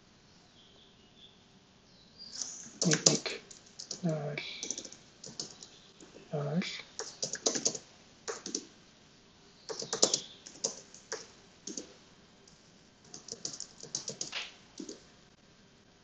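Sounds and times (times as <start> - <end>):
typing on computer keyboard: 2.4 - 5.7, 7.0 - 8.7, 9.7 - 15.0.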